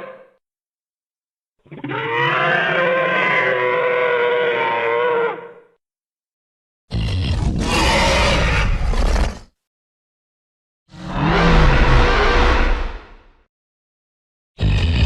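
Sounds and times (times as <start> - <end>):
creature roar: 1.7 - 5.7, 6.9 - 9.4, 10.9 - 13.2, 14.6 - 15.0.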